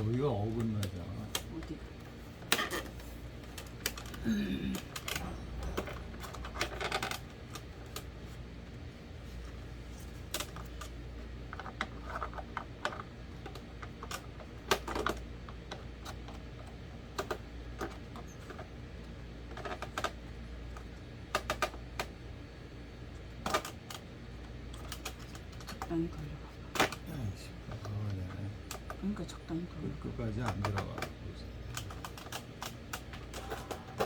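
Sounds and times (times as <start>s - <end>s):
plastic fan parts clicking: 0.0s - 1.8s, 2.4s - 8.2s, 10.2s - 22.2s, 23.3s - 26.0s, 30.4s - 34.0s
low steady hum: 0.0s - 34.0s.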